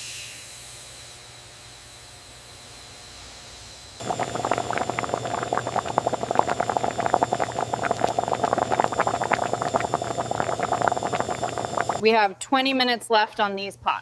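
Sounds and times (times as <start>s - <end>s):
pots of water boiling vigorously: 4.0s - 12.0s.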